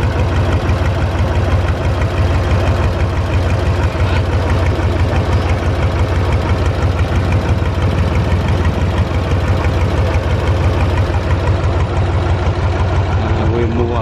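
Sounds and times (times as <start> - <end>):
tractor engine chugging: 0.0 - 14.0.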